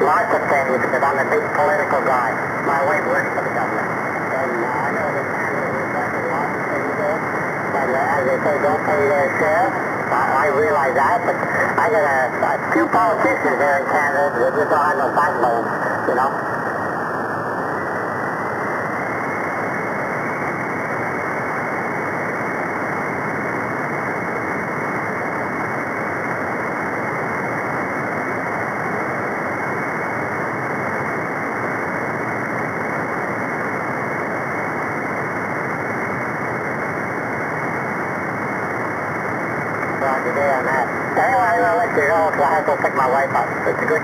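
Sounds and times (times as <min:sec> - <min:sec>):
radio static hiss: 0:00.0 - 0:44.0.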